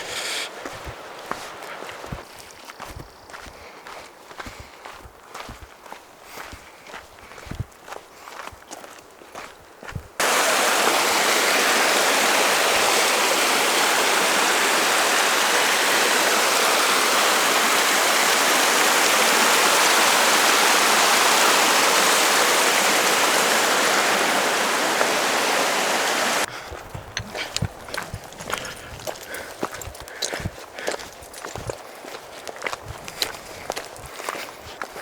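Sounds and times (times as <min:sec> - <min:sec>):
rushing mountain stream: 0:00.0 - 0:09.5, 0:10.2 - 0:35.0.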